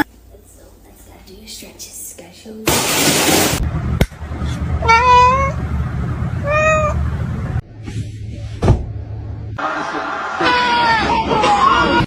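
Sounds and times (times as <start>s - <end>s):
low rumble: 3.4s - 9.6s
cat meowing: 4.8s - 5.6s, 6.4s - 7.0s.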